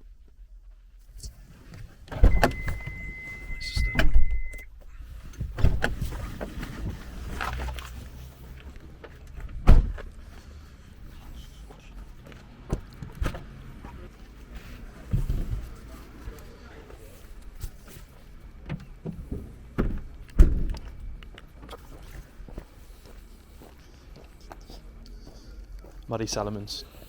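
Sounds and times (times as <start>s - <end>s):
knocks and shuffling inside car: 0.1s - 22.7s
steady beep: 2.2s - 4.7s
heavy thump: 5.4s - 6.2s.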